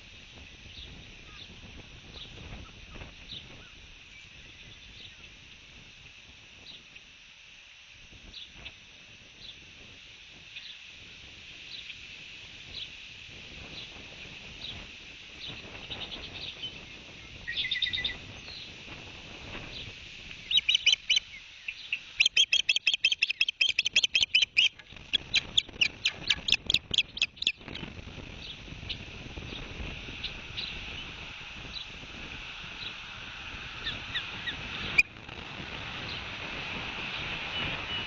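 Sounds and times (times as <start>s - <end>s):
steady high hiss: 0.0s - 38.0s
ospreys chirping: 17.5s - 18.6s, 20.4s - 29.7s.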